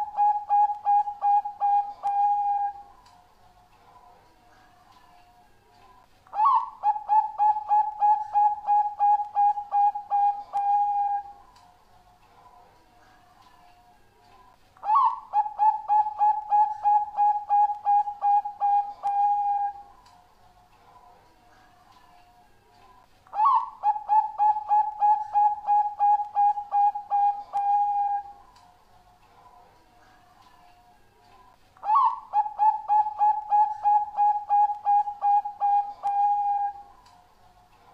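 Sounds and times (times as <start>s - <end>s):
dove cooing: 0.0s - 2.9s, 6.3s - 11.4s, 14.8s - 19.9s, 23.3s - 28.4s, 31.8s - 36.9s.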